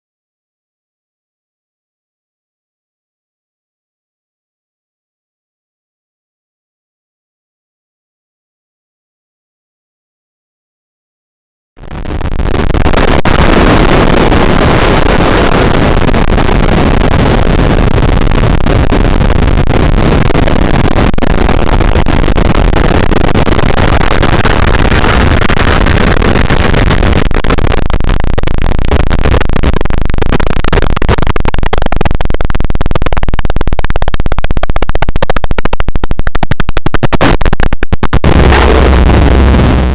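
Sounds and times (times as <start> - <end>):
loud distorted electronic noise: 11.8 - 39.9
rapid fluttering pulse: 11.8 - 39.9.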